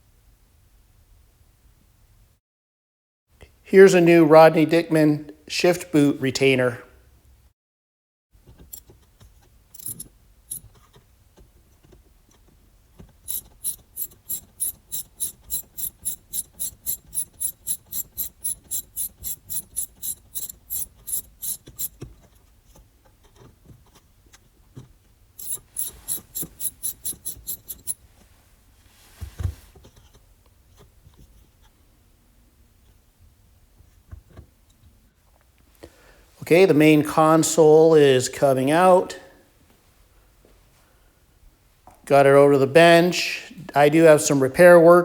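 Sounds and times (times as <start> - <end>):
hand ratchet clicking: 9.8 - 10.6, 13.2 - 22.1, 25.4 - 28.0.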